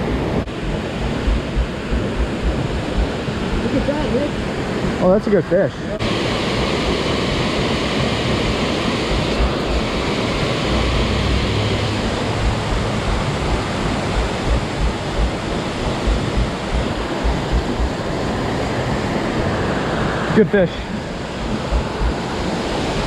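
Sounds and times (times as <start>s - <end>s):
wind buffeting microphone: 0.0s - 5.0s, 6.0s - 23.0s
waterfall rushing: 6.0s - 23.0s.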